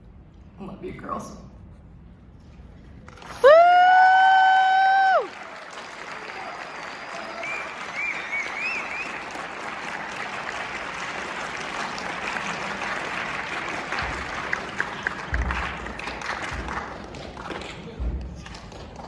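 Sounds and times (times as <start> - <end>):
audience applauding: 3.1 - 19.0
high cheers: 3.2 - 10.6.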